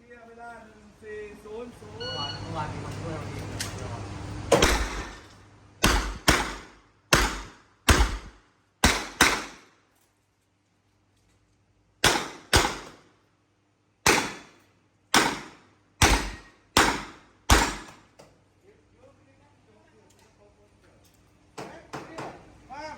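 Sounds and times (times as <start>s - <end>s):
handgun shots with echo: 4.5s - 9.7s, 12.0s - 13.0s, 14.1s - 14.6s, 15.2s - 18.0s.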